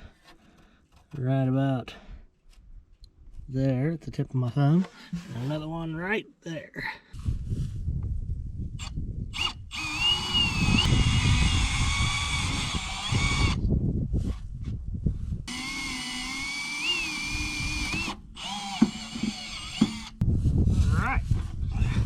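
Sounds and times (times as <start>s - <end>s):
drill boring into wood: 8.8s - 13.6s, 15.5s - 20.2s.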